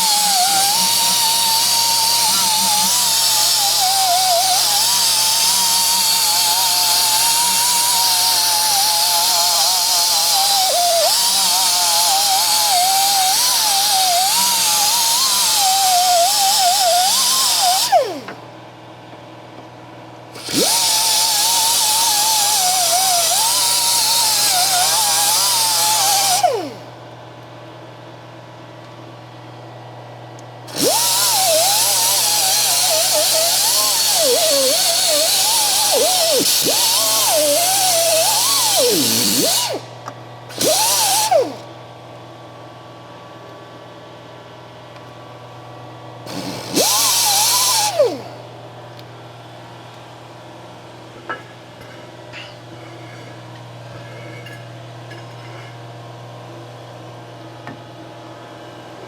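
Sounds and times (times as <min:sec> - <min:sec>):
power tool motor whirring: 0:00.0 - 0:18.4, 0:20.4 - 0:26.8, 0:30.7 - 0:39.9, 0:40.5 - 0:41.6, 0:46.3 - 0:48.4.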